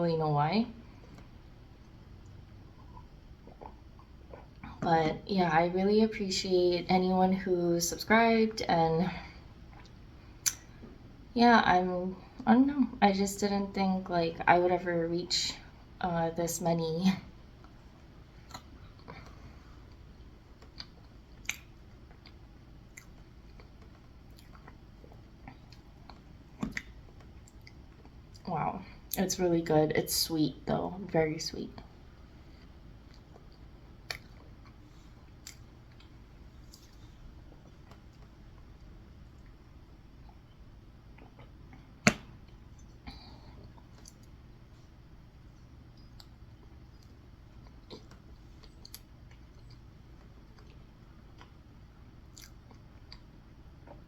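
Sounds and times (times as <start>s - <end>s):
person chewing cake: 1.0s - 4.8s, 17.6s - 28.5s, 32.2s - 54.0s
wet mouth clicks: 20.6s - 22.3s, 52.3s - 53.3s.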